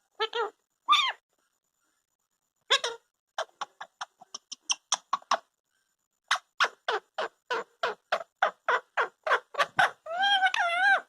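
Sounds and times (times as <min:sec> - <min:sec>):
parrot harsh calls: 0:06.3 - 0:11.0.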